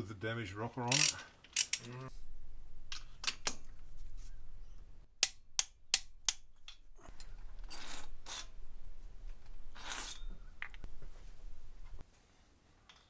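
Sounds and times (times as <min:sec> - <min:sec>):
sharp metallic clicks: 0:00.9 - 0:01.9
metal scraping and rubbing: 0:07.0 - 0:08.6, 0:09.4 - 0:10.9.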